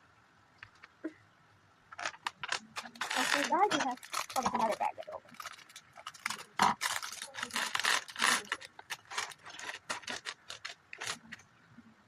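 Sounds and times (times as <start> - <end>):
plastic bag crinkling: 1.9 - 11.4
plastic bricks rattling: 1.9 - 11.4.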